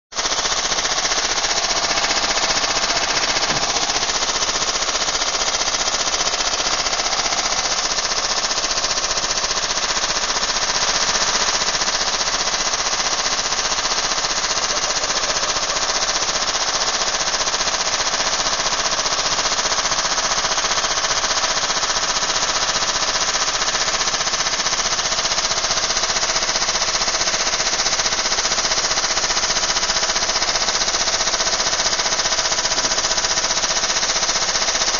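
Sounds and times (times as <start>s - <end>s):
washing machine banging and rattling: 1.3s - 4.2s.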